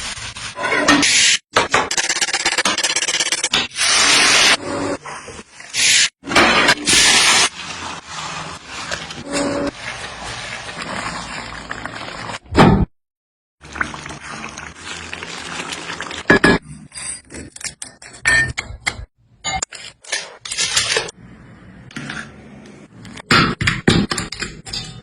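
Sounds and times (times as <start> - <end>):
sizzling: 5.5 - 12.6, 13.6 - 16.3.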